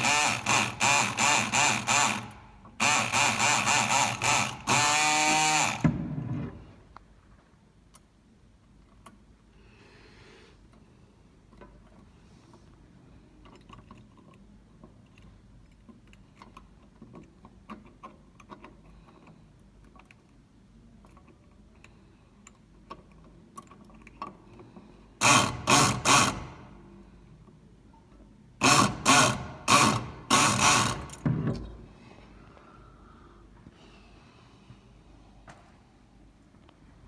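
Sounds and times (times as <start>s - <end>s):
pick gun buzzing rattle: 0.0s - 5.8s, 28.6s - 31.2s.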